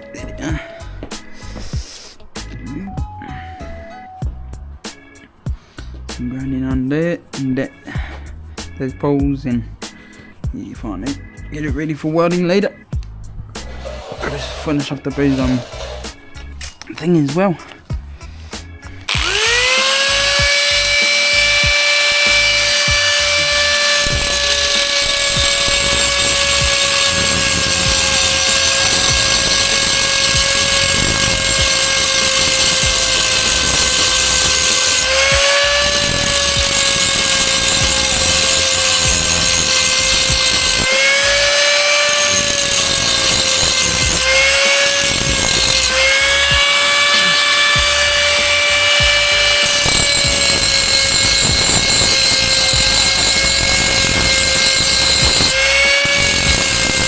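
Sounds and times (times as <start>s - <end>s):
angle grinder grinding steel: 13.6s - 17.0s, 18.9s - 57.0s.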